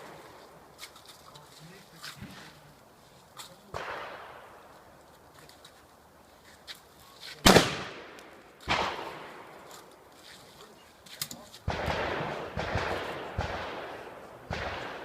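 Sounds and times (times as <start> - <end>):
shotgun shots with echo: 3.7 - 4.6, 7.4 - 9.5, 11.7 - 15.0.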